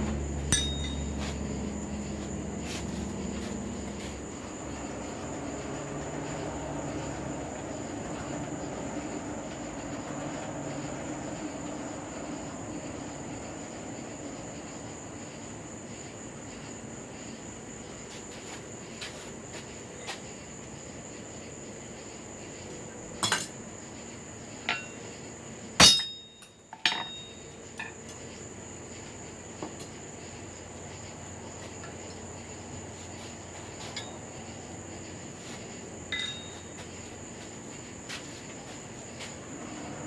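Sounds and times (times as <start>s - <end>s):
blacksmithing tools clinking: 0.4s - 1.4s, 23.2s - 23.6s, 24.7s - 25.0s, 25.8s - 28.0s, 36.1s - 36.7s
metal strike with ring: 0.4s - 1.4s, 25.8s - 27.9s, 36.1s - 36.7s.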